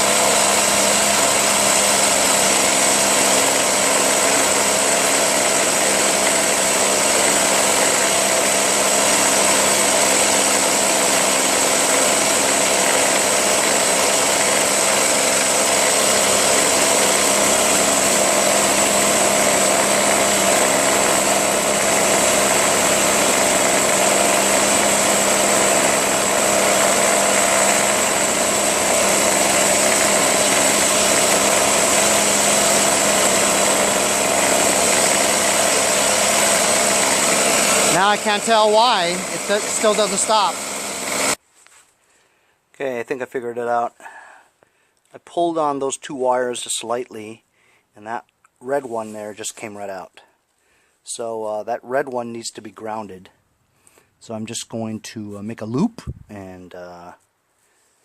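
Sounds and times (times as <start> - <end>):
leaf blower engine whining: 0.0 - 41.4.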